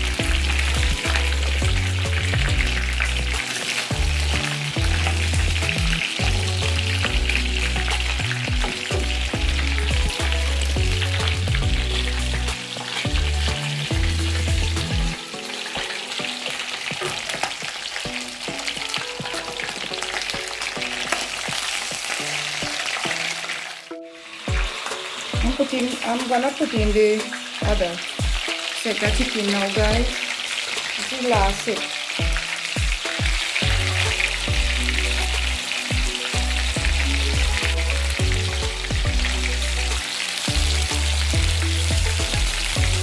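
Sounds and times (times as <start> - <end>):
background music with bass: 0.0 - 15.2, 32.2 - 43.0
chicken deep-frying in oil: 0.0 - 43.0.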